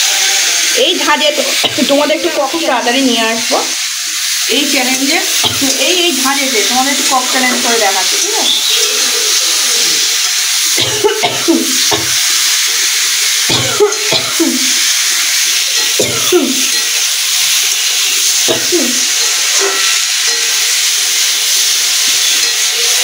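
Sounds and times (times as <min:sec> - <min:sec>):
food sizzling in hot oil: 0:00.0 - 0:23.0
person coughing: 0:10.8 - 0:12.1, 0:13.5 - 0:14.7, 0:16.0 - 0:16.6, 0:18.5 - 0:19.0.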